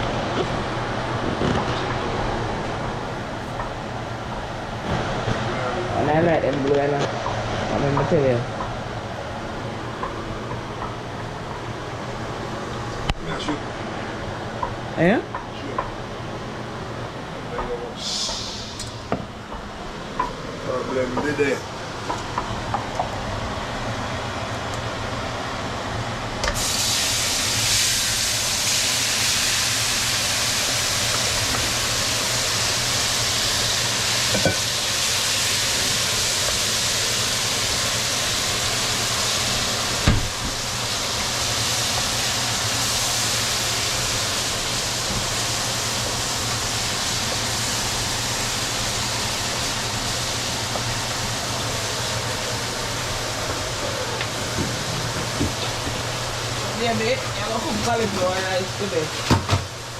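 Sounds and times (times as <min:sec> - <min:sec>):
loud steady hiss: 0:15.8 - 0:23.6, 0:25.2 - 0:59.9.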